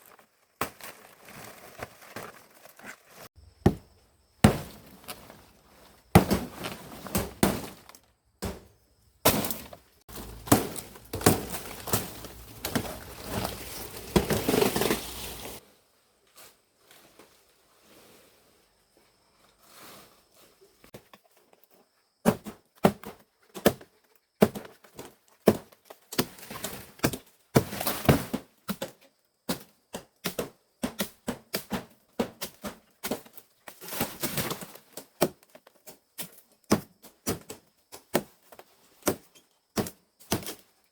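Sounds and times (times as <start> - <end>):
blade chopping palm leaves: 4.4 - 5.0, 6.1 - 7.8, 9.3 - 15.6
leaves crackling and rustling: 9.5 - 15.7.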